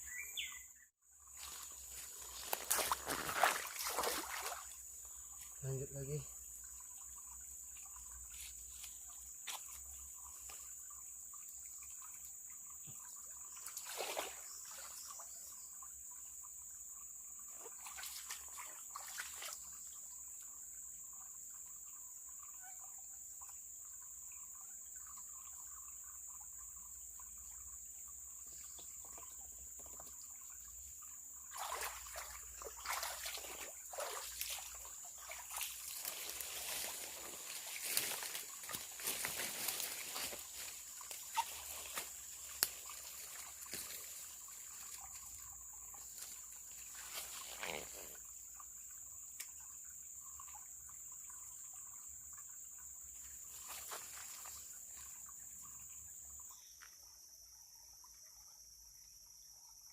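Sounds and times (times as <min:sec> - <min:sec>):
river trickling: 0:00.0 - 0:56.6
water splashing: 0:01.4 - 0:05.4, 0:13.6 - 0:15.1, 0:31.4 - 0:48.3.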